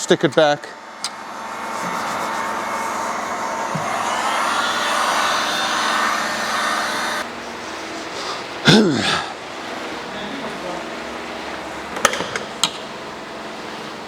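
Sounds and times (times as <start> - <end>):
loud downward pitch sweep: 0.8 - 7.4
heat gun blowing: 1.0 - 7.3.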